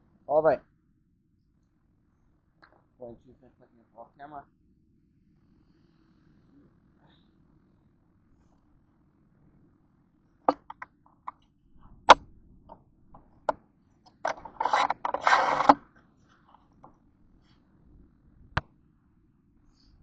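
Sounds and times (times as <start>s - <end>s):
sharp clicks and knocks: 10.5s - 11.4s, 13.2s - 15.8s
scraping and rustling: 14.1s - 16.8s.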